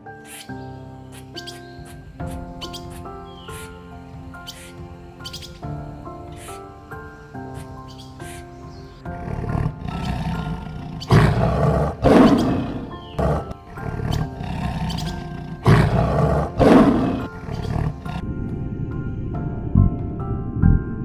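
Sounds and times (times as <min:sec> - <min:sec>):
background music: 0:00.0 - 0:21.0
large animal roaring: 0:09.1 - 0:18.2.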